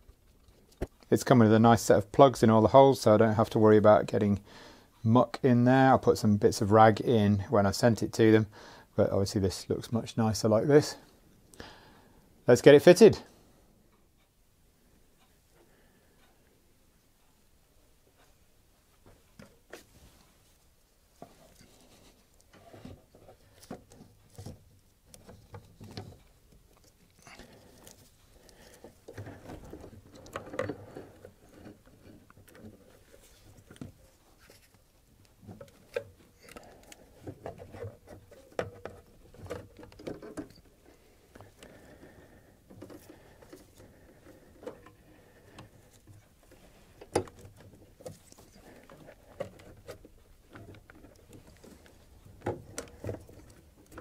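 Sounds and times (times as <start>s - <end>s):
rustling: 18.1s - 54.0s
clicks and knocks of handling parts: 21.2s - 54.0s.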